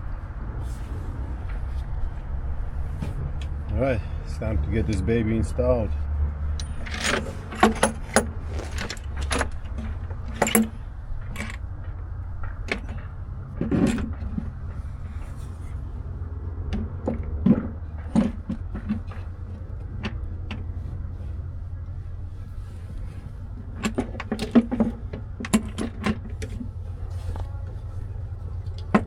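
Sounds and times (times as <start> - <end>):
steady low hum: 0.0 - 29.0
metallic clinks and knocks: 6.5 - 15.8.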